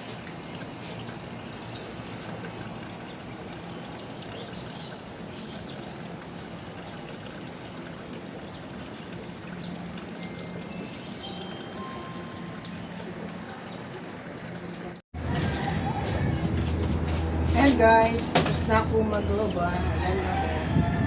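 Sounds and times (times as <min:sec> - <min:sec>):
water pouring into washing machine: 0:00.0 - 0:15.0.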